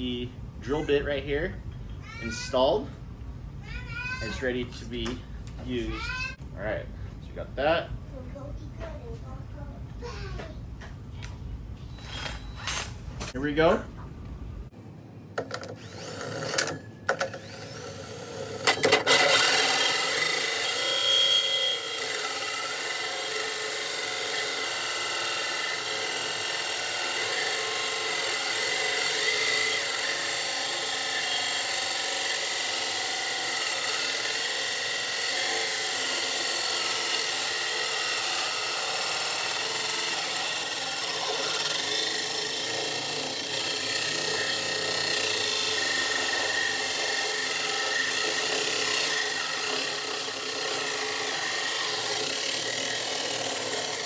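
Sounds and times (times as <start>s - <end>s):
power drill cutting with hole saw: 12.0s - 12.9s, 15.7s - 54.0s.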